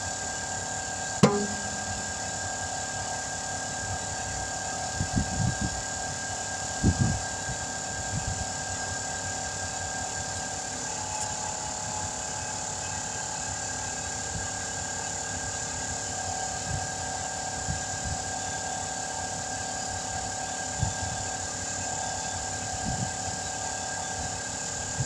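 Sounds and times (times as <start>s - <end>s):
low thumps: 1.2s - 2.3s.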